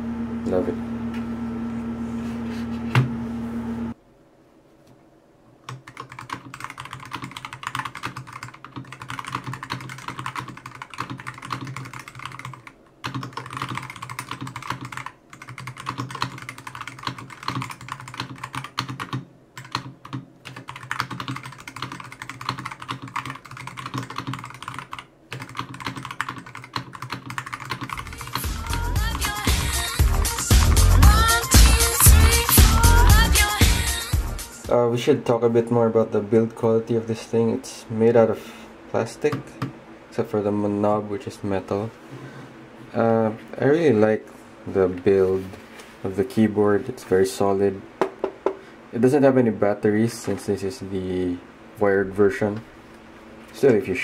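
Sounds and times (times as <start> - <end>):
mechanical keyboard keystrokes clacking: 5.7 - 28.0
music: 28.0 - 34.7.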